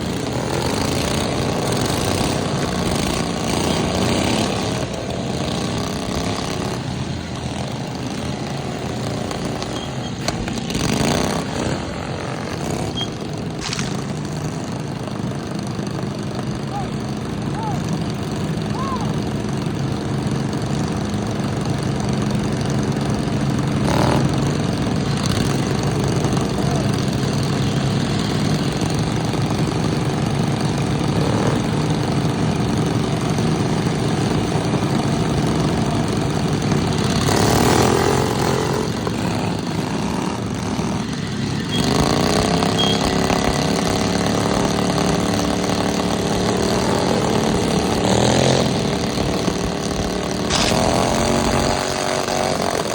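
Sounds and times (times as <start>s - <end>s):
lawn mower engines running: 0.0s - 52.9s
sharp knock: 50.5s - 51.2s.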